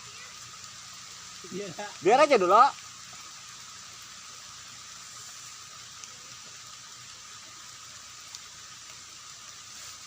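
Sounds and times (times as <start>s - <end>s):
steady rain falling: 0.0s - 10.0s.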